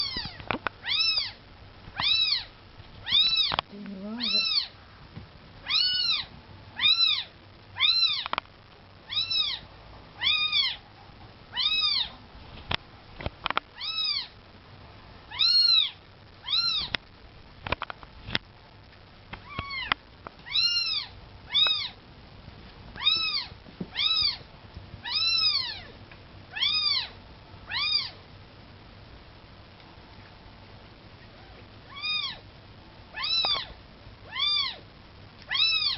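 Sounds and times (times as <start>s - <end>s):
kitten mewing: 2.0s - 4.7s, 5.6s - 8.3s, 19.4s - 22.0s, 33.1s - 34.8s, 35.5s - 35.9s.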